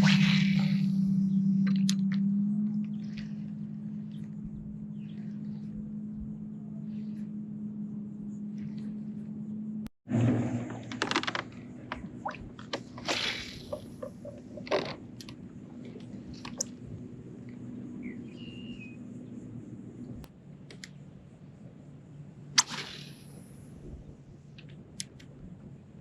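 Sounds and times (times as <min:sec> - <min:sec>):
fishing rod casting swishes: 0:00.0 - 0:02.2, 0:22.6 - 0:23.4
low hum: 0:00.0 - 0:26.0.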